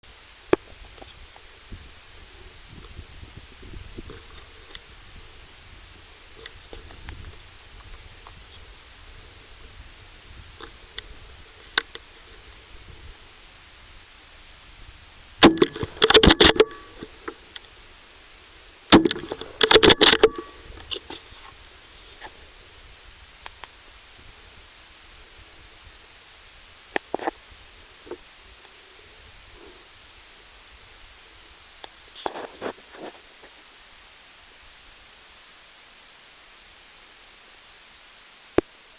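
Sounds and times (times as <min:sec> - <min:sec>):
steady hiss: 0:00.0 - 0:38.9
rustling: 0:00.1 - 0:35.1
rifle shot: 0:15.4 - 0:17.0
rattle of clicks: 0:15.4 - 0:17.7, 0:18.9 - 0:21.2.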